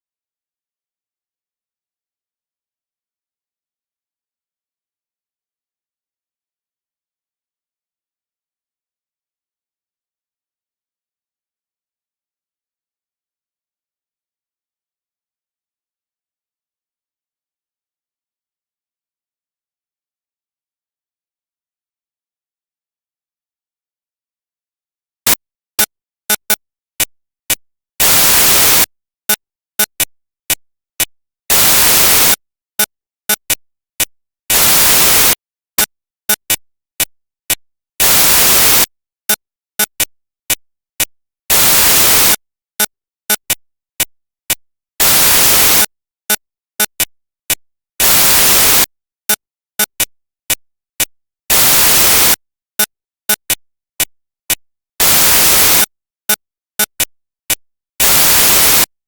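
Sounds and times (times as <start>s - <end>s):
bursts of static hiss: 28.0s - 28.9s, 31.5s - 32.4s, 34.5s - 35.4s, 38.0s - 38.9s, 41.5s - 42.4s, 48.0s - 48.9s, 58.0s - 58.9s.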